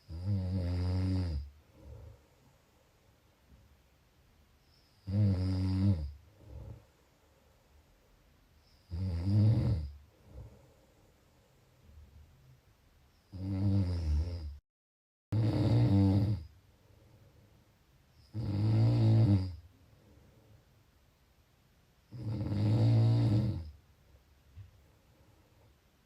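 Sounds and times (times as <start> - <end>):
person snoring: 0.0 - 2.2, 5.0 - 6.9, 8.9 - 10.6, 13.3 - 14.6, 15.3 - 16.5, 18.3 - 19.6, 22.1 - 23.8.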